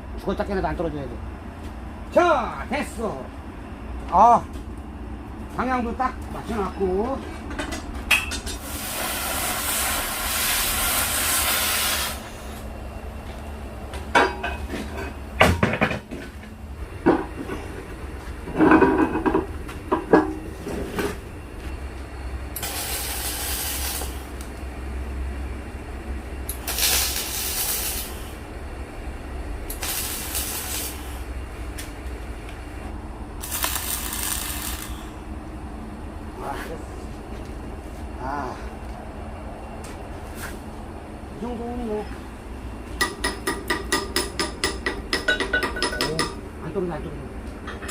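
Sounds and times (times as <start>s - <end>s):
steady low hum: 0.0s - 47.9s
metal clanks and knocks: 7.3s - 8.6s, 14.0s - 17.7s, 18.4s - 21.2s, 43.0s - 46.4s, 47.6s - 47.9s
welding arc crackling hiss: 8.4s - 12.7s, 22.5s - 24.7s, 26.4s - 28.5s, 29.6s - 32.6s, 33.4s - 35.2s.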